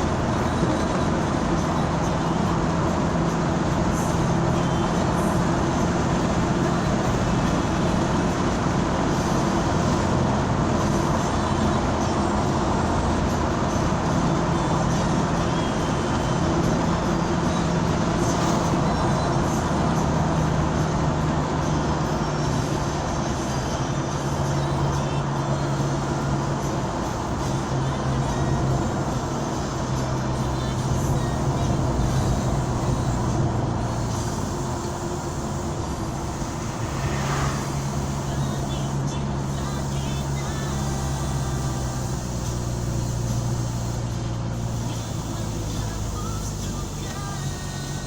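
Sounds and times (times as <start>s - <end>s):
road rumble: 0.0s - 48.0s
vehicle engine hum: 0.0s - 48.0s.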